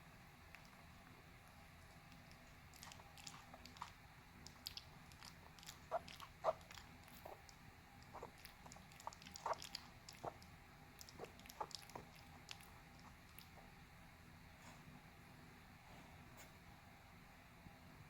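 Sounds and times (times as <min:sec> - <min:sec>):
dog's mouth smacking and clicking: 0:02.0 - 0:13.7.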